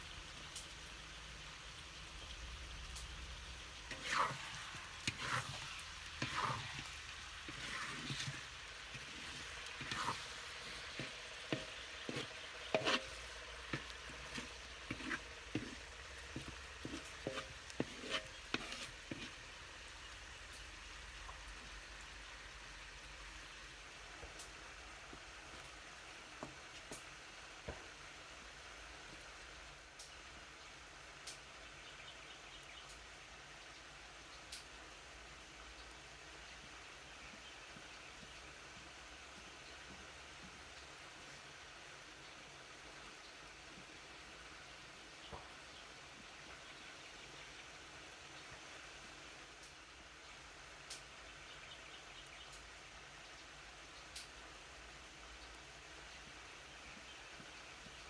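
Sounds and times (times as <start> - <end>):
food sizzling in a pan: 0.0 - 58.0
utensil scraping a pan: 3.4 - 19.6.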